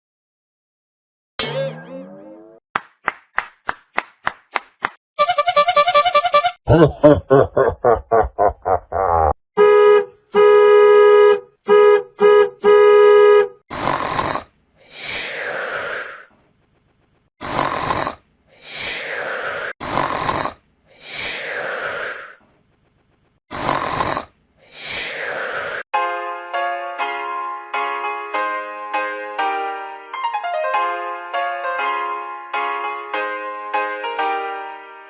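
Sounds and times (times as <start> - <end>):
buzzy horn-like blasts: 5.2 - 6.6, 9.6 - 13.6
cartoon snoring effect: 13.7 - 16.3, 17.4 - 22.4, 23.5 - 25.8.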